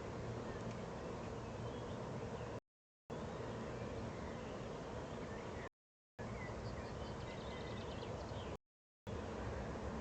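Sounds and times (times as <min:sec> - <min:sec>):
low electrical hum: 0:00.0 - 0:10.0.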